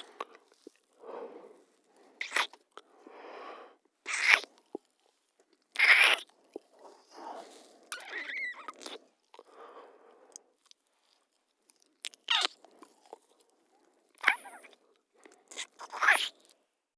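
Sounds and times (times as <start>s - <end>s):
kissing lip smacks: 2.2s - 2.6s.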